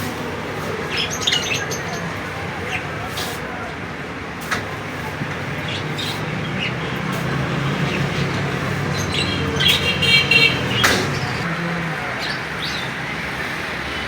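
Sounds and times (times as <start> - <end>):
road traffic rumble: 0.0 - 14.0
vehicle horn: 9.3 - 11.6.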